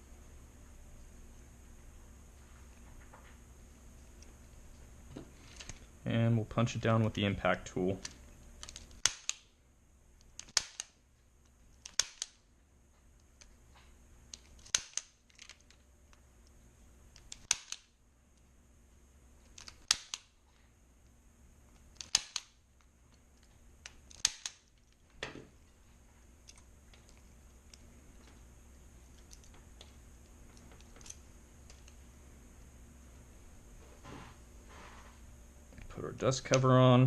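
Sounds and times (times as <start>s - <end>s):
punch-down tool snapping: 8.6s - 9.5s, 10.3s - 11.0s, 11.8s - 12.4s, 14.3s - 15.5s, 17.2s - 17.9s, 19.5s - 20.3s, 21.9s - 22.6s, 23.8s - 24.7s.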